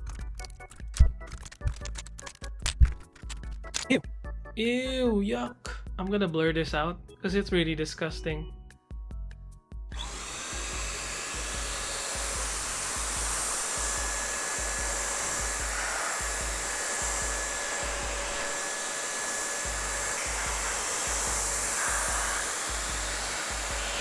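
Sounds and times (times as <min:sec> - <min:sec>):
air blower running: 0:09.9 - 0:24.0.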